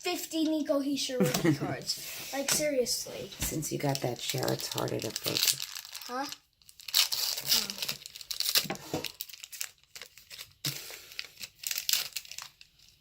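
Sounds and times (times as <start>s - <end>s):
plastic wrapper crinkling and tearing: 2.7s - 13.0s.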